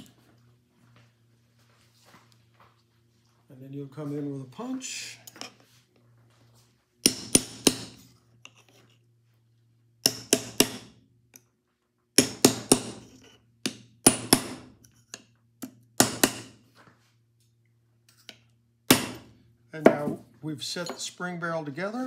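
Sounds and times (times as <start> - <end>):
hammer striking metal punch: 7.0 - 8.0, 12.2 - 14.7, 15.6 - 16.6, 18.9 - 20.2.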